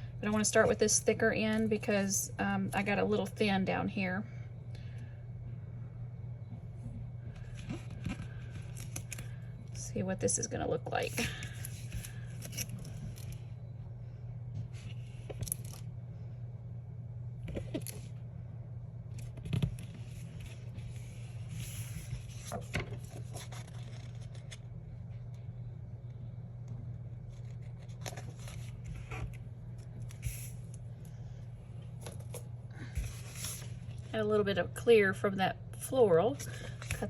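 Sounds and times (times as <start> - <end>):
steady low hum: 0.0 - 37.0
paper rustling and scraping: 19.4 - 24.7, 27.3 - 30.7, 32.1 - 34.0.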